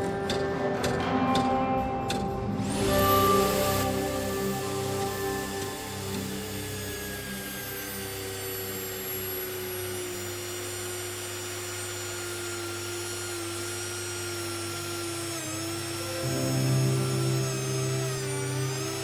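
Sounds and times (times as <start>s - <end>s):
wood router running: 0.0s - 19.0s.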